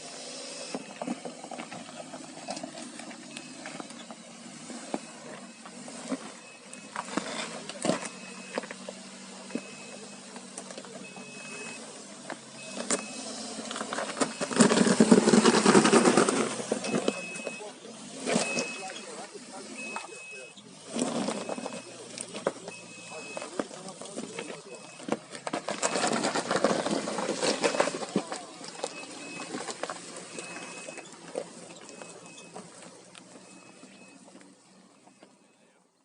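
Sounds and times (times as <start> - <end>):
car engine pulling uphill: 0.0 - 36.0
short high beeps: 11.0 - 11.9, 12.6 - 14.8, 16.8 - 20.6, 21.2 - 23.6, 27.4 - 32.8.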